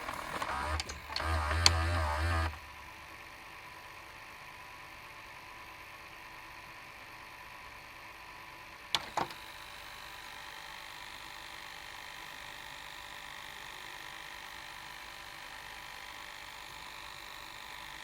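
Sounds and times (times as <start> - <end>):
sharp mechanism clicks: 0.0 - 2.6
tape mechanism whirring: 0.0 - 2.6.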